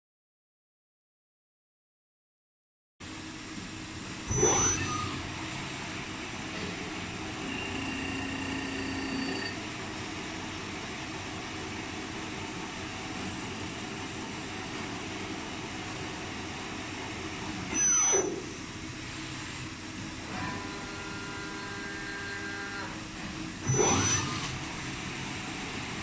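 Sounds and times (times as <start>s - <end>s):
machine tool hum: 3.0s - 26.0s
motor whine: 3.4s - 9.8s, 17.5s - 26.0s.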